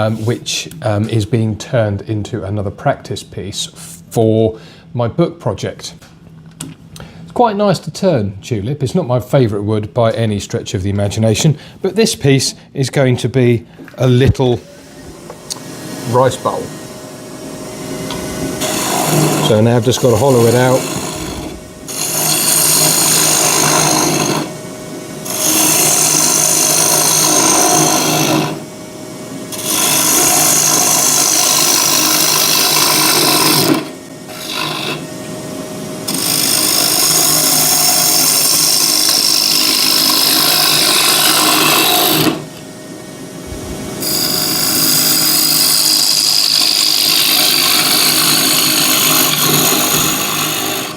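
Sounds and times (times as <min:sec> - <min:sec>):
lathe humming: 0:13.8 - 0:50.9
gouge scraping wood: 0:18.1 - 0:24.6, 0:25.3 - 0:28.6, 0:29.6 - 0:35.1, 0:36.1 - 0:42.5, 0:44.0 - 0:50.9.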